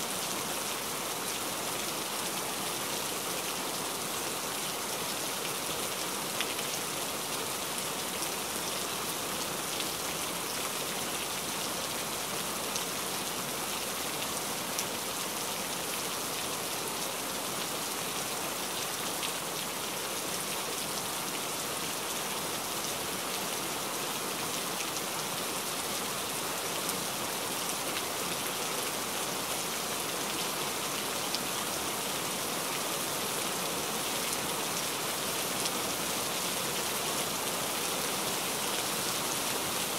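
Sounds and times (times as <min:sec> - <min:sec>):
heavy rain on hard surface: 0:00.0 - 0:39.9.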